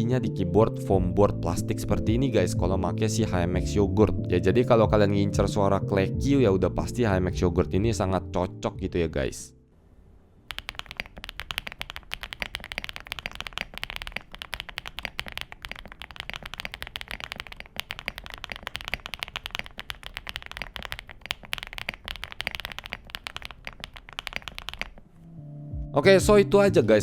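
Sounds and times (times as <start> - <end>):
mechanical keyboard typing: 10.5 - 25.2.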